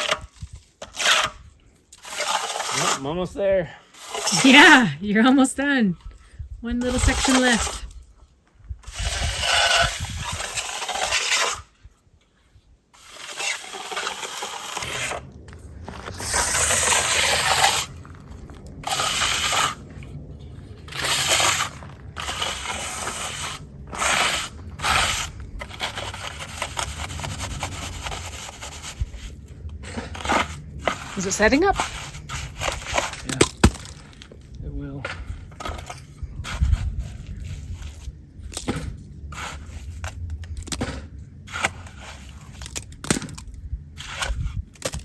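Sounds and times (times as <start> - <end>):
trowel scraping wet concrete: 0.0 - 4.9, 6.8 - 7.9, 8.8 - 11.8, 12.9 - 34.4, 35.0 - 43.4, 44.0 - 45.0
steady low rumble: 14.6 - 45.0.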